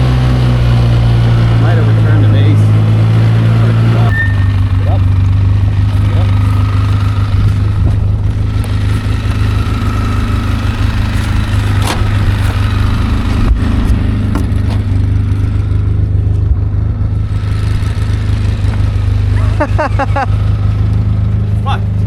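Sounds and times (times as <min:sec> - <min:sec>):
atv engine running: 0:00.0 - 0:22.0
sharp knocks and rattles: 0:04.2 - 0:19.1.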